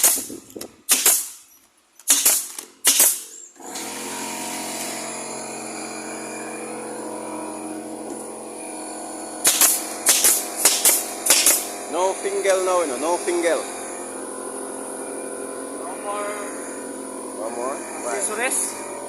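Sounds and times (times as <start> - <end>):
nail gun firing: 0.0 - 1.4, 2.0 - 5.3, 9.4 - 11.9
motor drone with hiss: 3.7 - 19.0.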